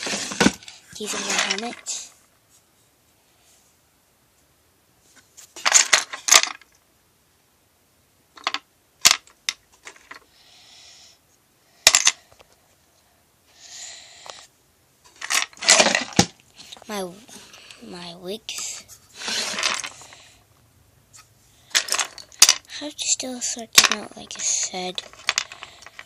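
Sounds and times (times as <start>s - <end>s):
rustling sliding sounds: 0.0s - 3.8s, 18.5s - 20.4s, 24.3s - 26.0s
plastic bricks clicking: 5.6s - 6.7s, 8.4s - 10.2s, 11.9s - 12.2s, 15.1s - 16.3s, 19.3s - 20.2s, 21.7s - 22.7s, 23.7s - 26.0s.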